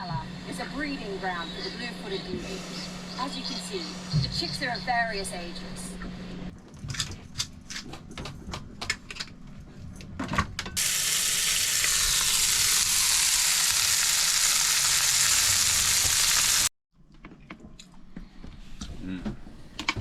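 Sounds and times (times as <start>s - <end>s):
food sizzling in a hot pan: 10.8s - 16.7s.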